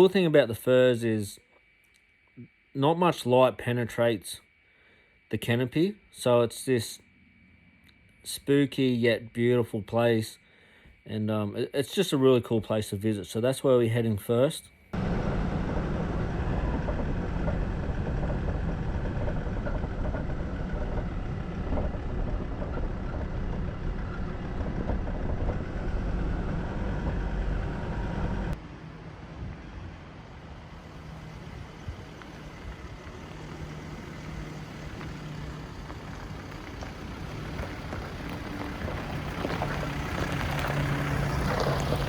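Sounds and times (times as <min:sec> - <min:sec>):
car engine and road noise: 0:14.9 - 0:42.0.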